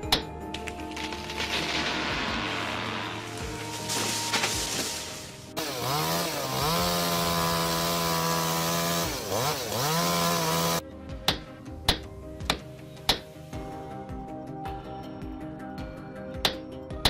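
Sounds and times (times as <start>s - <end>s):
chainsaw revving: 5.6s - 10.8s.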